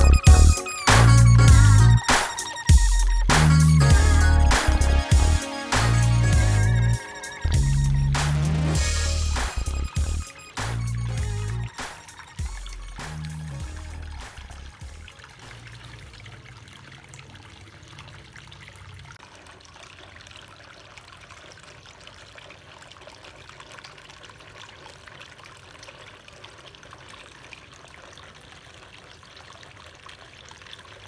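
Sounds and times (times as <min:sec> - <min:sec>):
low hum: 0:00.0 - 0:02.1, 0:02.7 - 0:11.8, 0:12.4 - 0:15.1
water trickling and splashing: 0:08.8 - 0:31.0.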